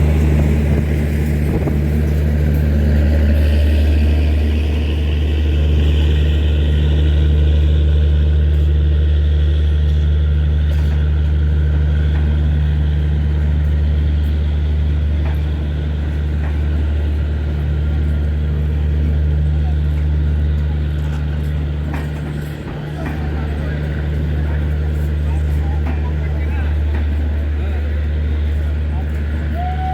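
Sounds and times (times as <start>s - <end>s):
locomotive machinery humming: 0.0s - 29.9s.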